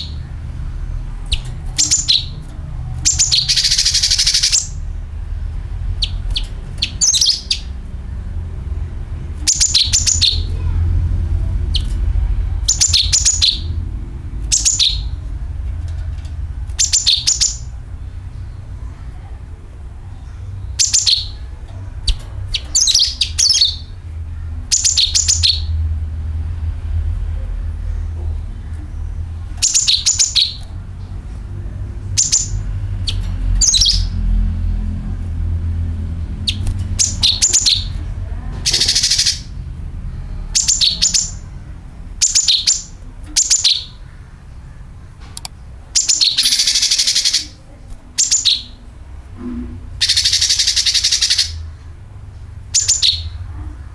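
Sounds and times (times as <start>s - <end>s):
buzzy rasping bird trills: 0.0s - 10.8s
steady low rumble: 0.0s - 53.9s
bird chattering calls: 1.2s - 4.8s, 6.0s - 7.9s, 9.4s - 10.7s, 12.6s - 13.8s, 14.5s - 15.3s, 16.7s - 19.3s, 20.1s - 24.0s, 29.6s - 30.8s, 32.1s - 34.2s, 36.4s - 39.7s, 40.5s - 41.6s, 42.2s - 45.2s, 45.9s - 48.8s, 50.0s - 51.8s, 52.7s - 53.5s.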